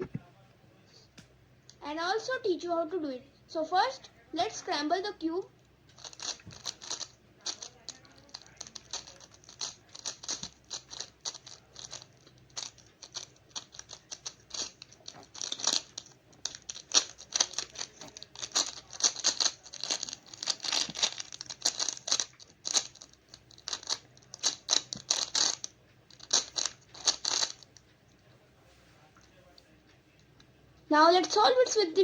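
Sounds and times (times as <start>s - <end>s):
puzzle cube clicking: 5.9s - 27.7s.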